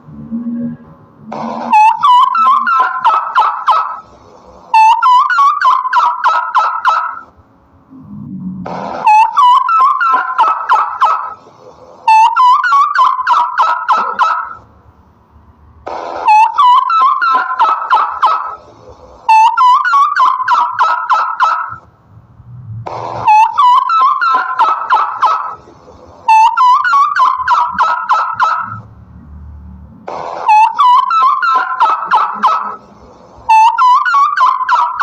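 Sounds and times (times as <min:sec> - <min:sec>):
turkey gobbling: 0:01.6 - 0:04.0, 0:04.7 - 0:07.2, 0:09.0 - 0:11.4, 0:12.0 - 0:14.6, 0:16.3 - 0:18.6, 0:19.3 - 0:21.8, 0:23.2 - 0:25.6, 0:26.2 - 0:28.8, 0:30.4 - 0:32.8, 0:33.5 - 0:35.0.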